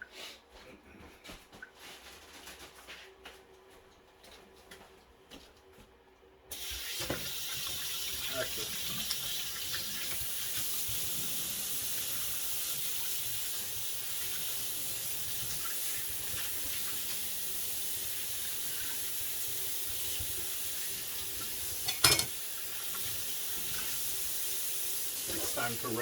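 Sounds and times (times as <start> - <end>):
tap water running into sink: 6.5 - 26.0.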